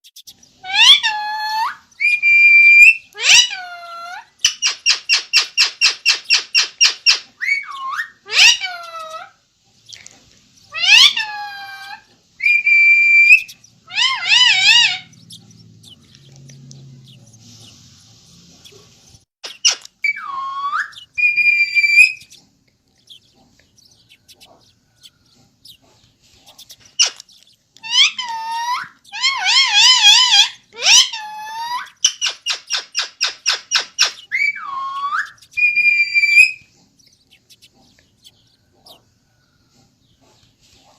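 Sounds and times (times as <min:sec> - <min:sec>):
parakeet calling: 0:00.1 - 0:39.1.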